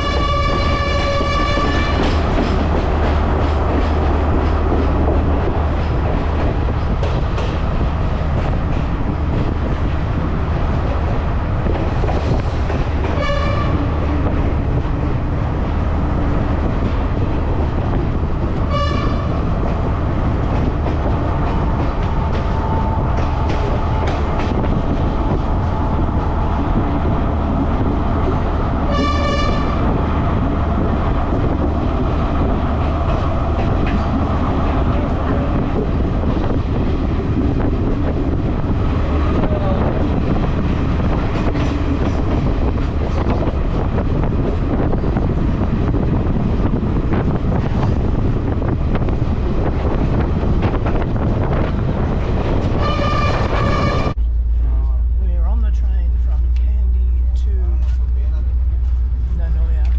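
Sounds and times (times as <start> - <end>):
train horn toots: 0.0 - 2.3, 13.1 - 14.0, 18.7 - 19.5, 28.9 - 30.0, 52.7 - 54.2
train rumbling on rails: 0.0 - 59.9.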